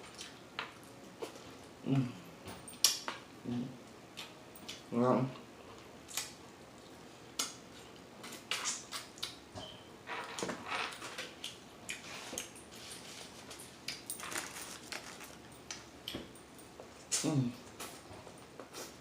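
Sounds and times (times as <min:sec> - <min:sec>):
mouth smacking and chewing: 0:06.1 - 0:09.4.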